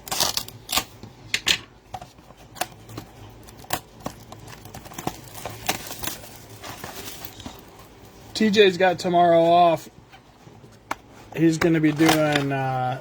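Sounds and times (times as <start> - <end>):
card packaging crinkling: 2.0 - 9.8, 10.7 - 13.0.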